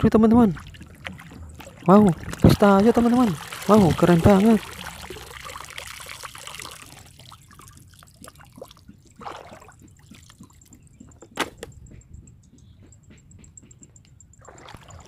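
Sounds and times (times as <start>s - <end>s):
small water splashes: 0.0s - 10.7s, 14.4s - 15.0s
water trickling and dripping: 0.0s - 11.2s, 14.2s - 15.0s.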